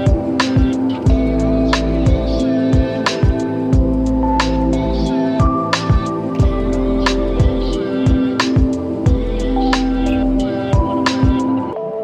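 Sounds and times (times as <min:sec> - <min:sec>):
kick drum: 0:00.0 - 0:01.4, 0:02.1 - 0:04.0, 0:05.4 - 0:06.6, 0:07.4 - 0:09.3, 0:10.8 - 0:11.5.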